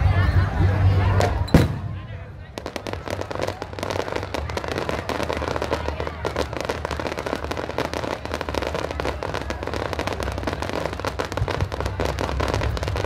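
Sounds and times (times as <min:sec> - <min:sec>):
fireworks crackling pops: 0:01.2 - 0:13.0.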